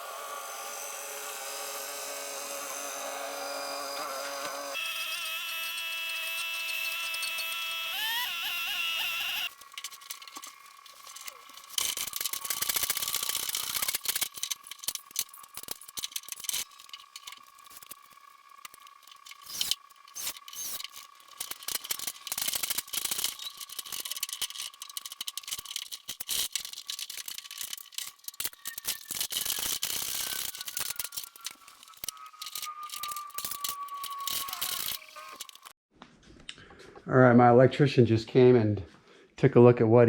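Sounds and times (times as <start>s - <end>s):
metallic rattling and clicking: 18.6s - 35.7s.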